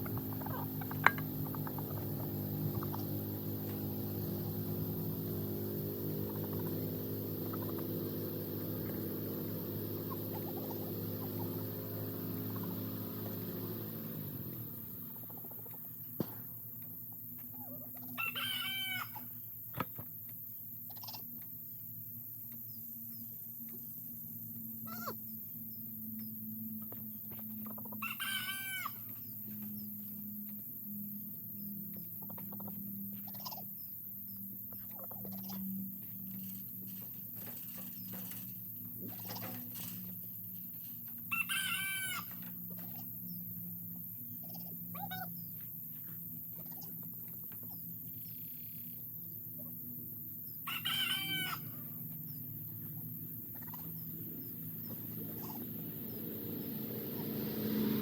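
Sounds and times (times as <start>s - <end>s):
steady motor hum: 0.0s - 58.0s
rooster crowing: 18.0s - 19.3s, 27.9s - 29.1s, 41.2s - 42.5s, 50.6s - 52.1s.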